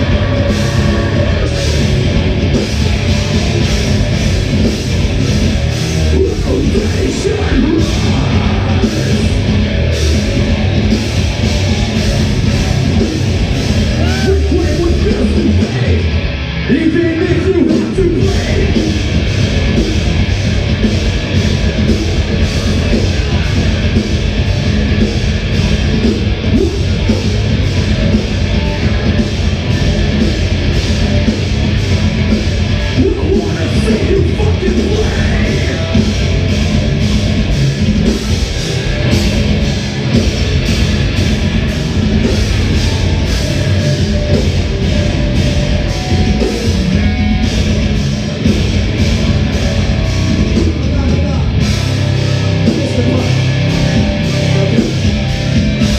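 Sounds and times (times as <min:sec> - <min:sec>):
rock band playing live: 0:00.0 - 0:55.9.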